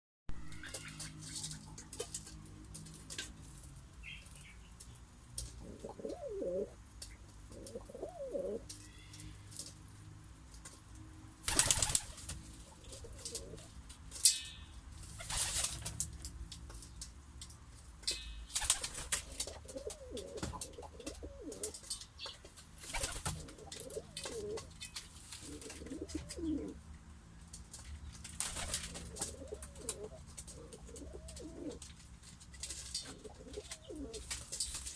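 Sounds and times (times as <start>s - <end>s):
pigeons cooing: 5.6s - 6.8s, 7.5s - 9.2s, 11.5s - 13.8s, 19.2s - 21.9s, 22.9s - 24.7s, 25.4s - 26.8s, 28.5s - 31.9s, 33.0s - 34.3s
wings flapping: 11.4s - 13.6s, 15.2s - 16.0s, 18.5s - 21.8s, 22.8s - 26.4s, 28.2s - 31.9s.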